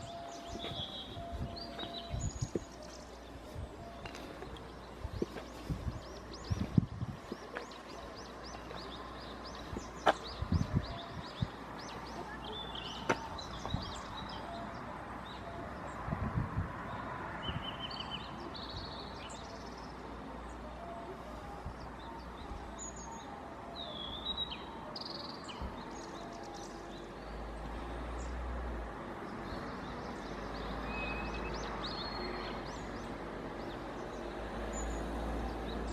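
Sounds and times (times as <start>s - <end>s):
birds chirping and calling: 0.0s - 16.1s.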